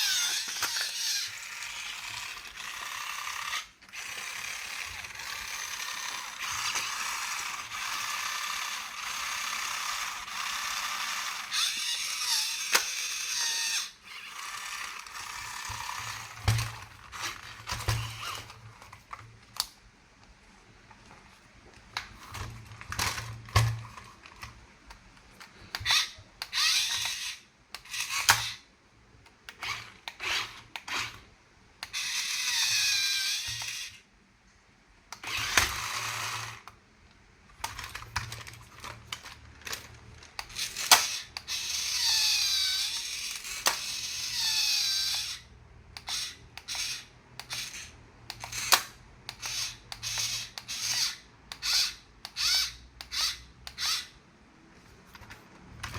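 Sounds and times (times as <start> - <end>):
plastic toy parts clicking and rattling: 0.0 - 19.8, 21.8 - 28.6, 29.3 - 31.2, 31.8 - 34.0, 35.1 - 36.8, 37.5 - 54.2
electronic toy sound effects: 31.9 - 34.0, 40.5 - 45.4.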